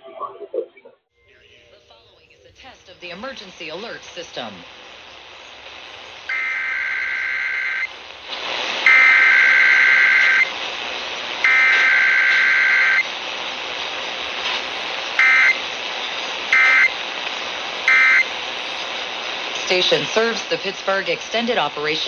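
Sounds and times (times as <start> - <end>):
radio hiss: 1.2 - 22.0
buzzy digital data bursts: 5.3 - 7.9, 15.2 - 15.6.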